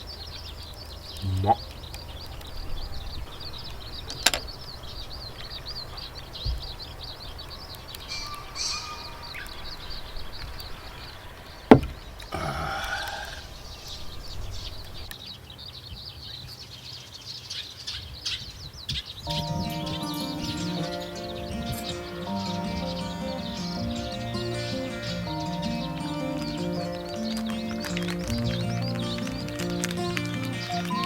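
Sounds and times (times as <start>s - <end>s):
small birds chirping: 0.0s - 31.0s
sharp knock: 11.7s - 12.0s.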